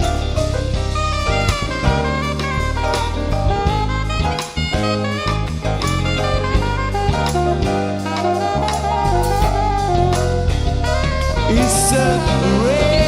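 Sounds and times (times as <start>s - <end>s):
bass: 0.0s - 13.0s
drums steady beat: 0.0s - 13.0s
lead melody: 0.0s - 13.0s.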